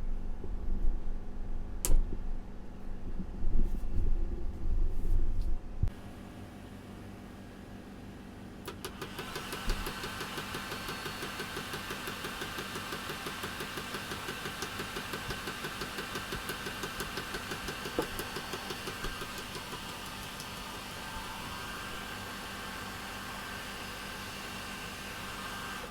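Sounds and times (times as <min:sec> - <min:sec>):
hazer machine hissing and pulsing: 0:08.7 - 0:25.9.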